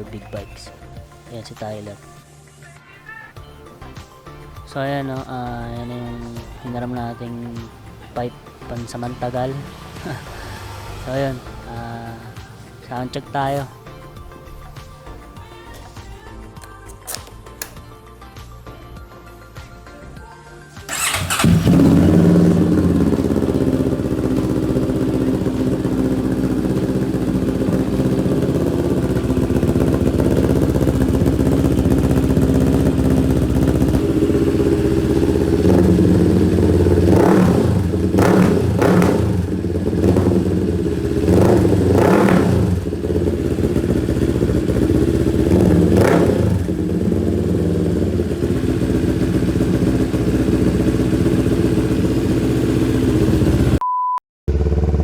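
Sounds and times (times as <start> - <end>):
motorcycle engine idling: 3.3 - 16.3, 20.9 - 53.8, 54.5 - 55.0
engine revving blips: 6.3 - 13.7, 20.9 - 53.8, 54.5 - 55.0.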